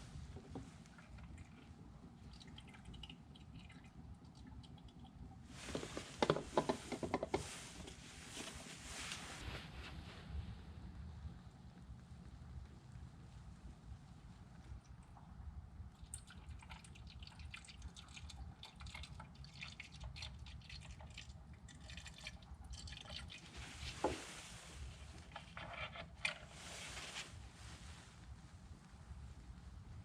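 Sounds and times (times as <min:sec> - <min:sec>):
liquid trickling and dripping: 0:00.2 - 0:06.8, 0:14.5 - 0:25.6.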